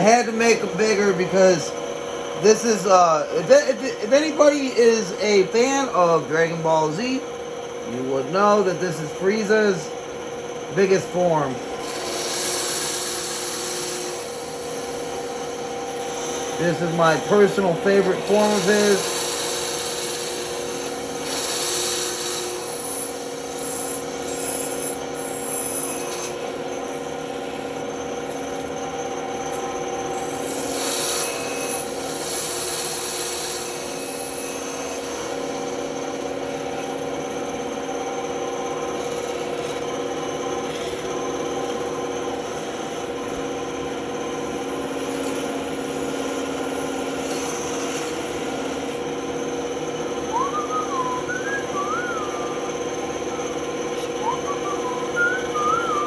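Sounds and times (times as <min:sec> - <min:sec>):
band saw motor hum: 0:00.0 - 0:56.0
saw blade cutting wood: 0:11.8 - 0:14.4, 0:16.2 - 0:26.4.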